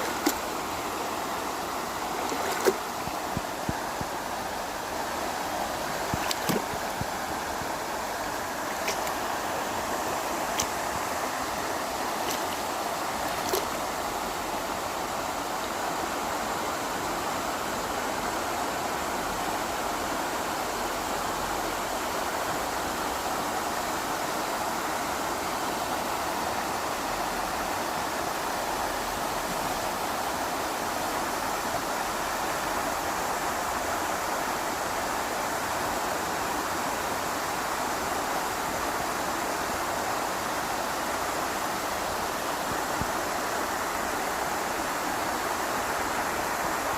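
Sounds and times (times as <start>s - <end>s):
waterfall roaring: 0.0s - 29.2s.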